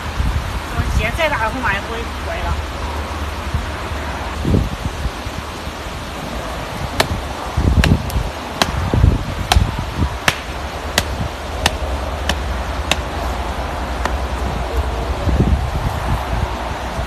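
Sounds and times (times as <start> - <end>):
wind noise on microphone: 0.0 - 17.0
sharp rhythmic knocks: 9.4 - 13.1.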